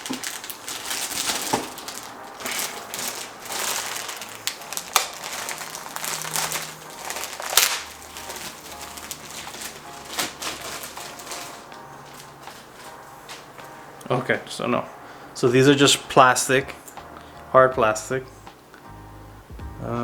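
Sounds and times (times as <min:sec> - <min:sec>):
plastic bag crinkling: 0:00.0 - 0:13.8.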